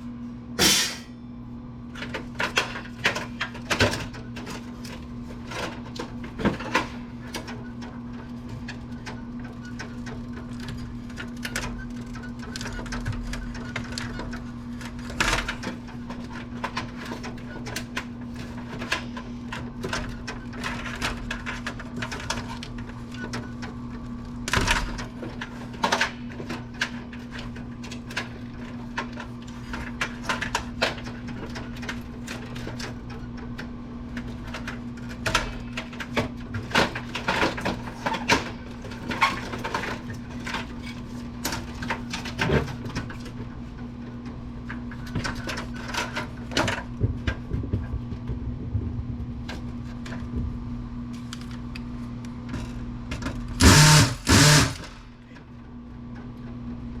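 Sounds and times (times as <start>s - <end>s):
loud short bursts: 0.6s - 1.2s, 53.6s - 54.9s.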